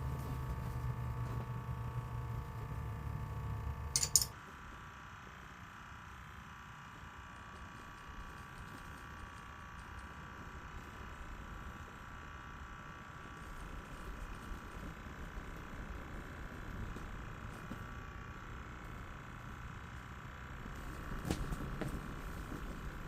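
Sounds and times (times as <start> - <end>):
faint steady hum: 0.0 - 23.0
sharp clatter: 3.9 - 4.3.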